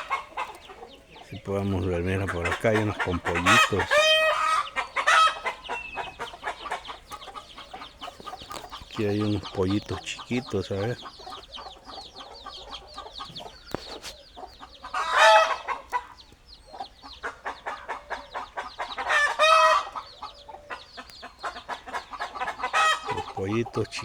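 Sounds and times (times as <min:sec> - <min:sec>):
chickens clucking: 0:00.0 - 0:24.0
chicks peeping: 0:00.0 - 0:24.0
loud drawn-out chicken calls: 0:00.0 - 0:24.0.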